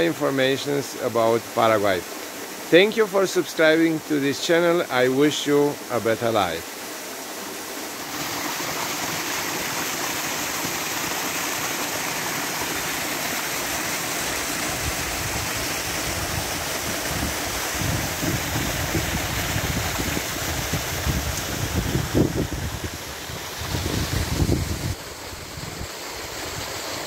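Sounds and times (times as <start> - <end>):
waterfall rushing: 0.0 - 27.0
wind buffeting microphone: 14.7 - 26.8.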